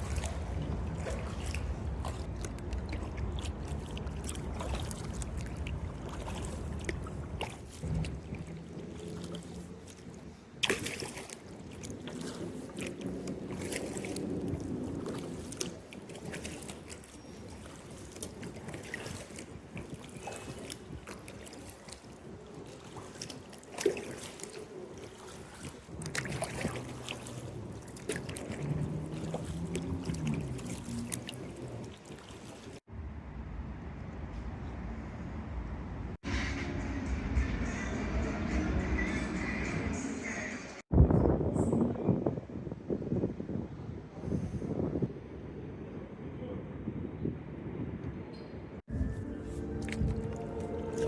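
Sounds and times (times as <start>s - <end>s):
paddle splashing water: 0.0s - 32.9s, 48.9s - 51.0s
water dripping: 0.0s - 32.9s, 49.6s - 51.0s
low hum: 48.9s - 51.0s.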